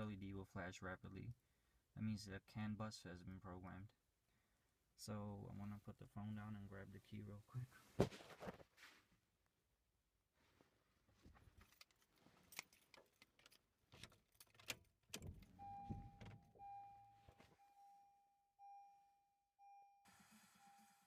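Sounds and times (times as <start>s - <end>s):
car key rattling in ignition: 11.6s - 16.6s
dashboard warning chime: 15.5s - 21.0s.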